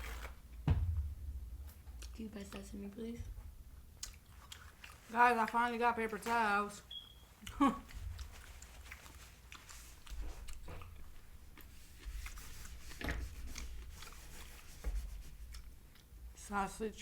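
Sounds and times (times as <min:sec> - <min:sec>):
soft low bumps: 0:00.6 - 0:01.8
person chewing food: 0:01.8 - 0:02.7, 0:03.8 - 0:05.6, 0:07.1 - 0:12.9, 0:13.5 - 0:14.4, 0:15.4 - 0:16.2.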